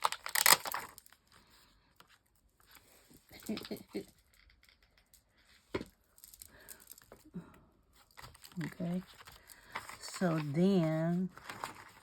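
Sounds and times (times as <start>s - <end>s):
paper rustling: 8.1s - 12.0s.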